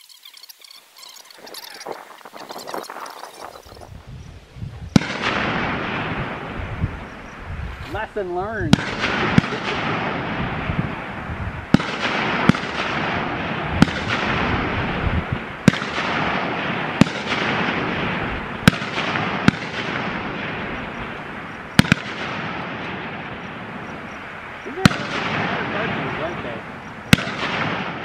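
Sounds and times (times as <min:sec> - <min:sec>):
steady background hiss: 0:00.0 - 0:28.0
rifle shots: 0:05.0 - 0:06.6, 0:08.7 - 0:28.0.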